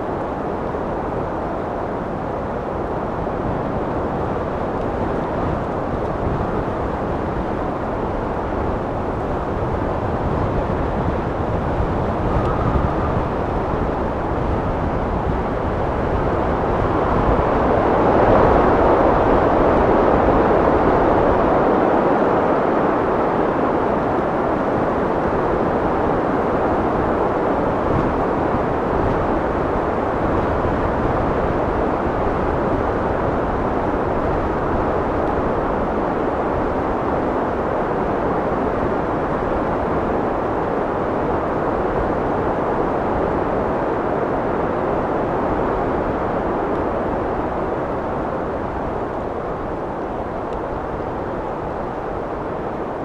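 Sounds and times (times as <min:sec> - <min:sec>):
wind blowing: 0:00.0 - 0:21.5.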